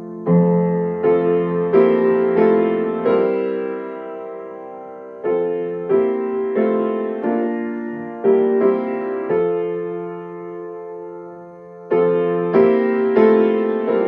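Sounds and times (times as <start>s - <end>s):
piano playing gentle chords: 0.0s - 14.0s.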